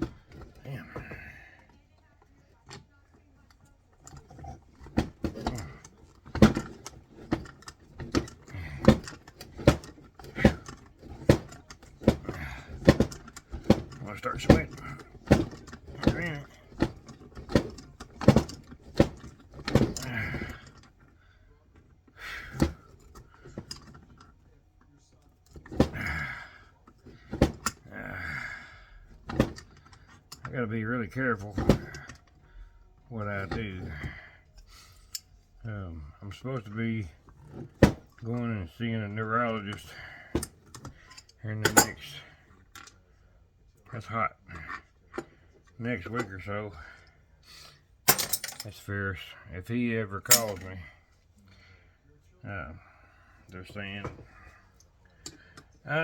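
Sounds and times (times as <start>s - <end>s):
hand tools knocking on metal: 50.2s - 50.7s.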